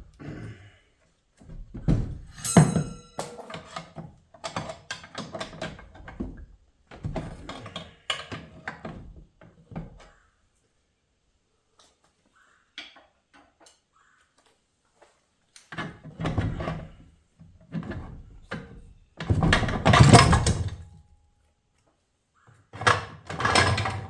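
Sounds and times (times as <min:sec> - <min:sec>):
metal parts scraping and clattering: 0:02.4 - 0:03.9.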